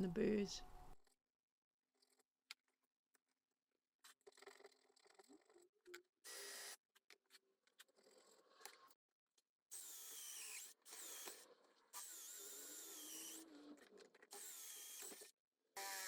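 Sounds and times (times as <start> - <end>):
drill press cutting: 14.3 - 16.0.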